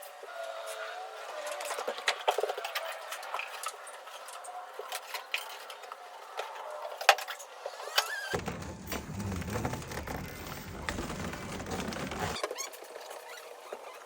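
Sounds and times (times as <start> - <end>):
short squeak: 7.9 - 14.0.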